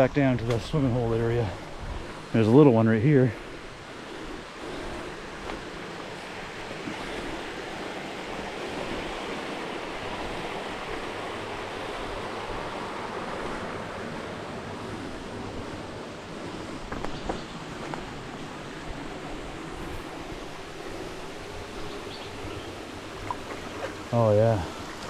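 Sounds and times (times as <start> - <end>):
waterfall rushing into pool: 4.1 - 16.3, 17.8 - 25.0.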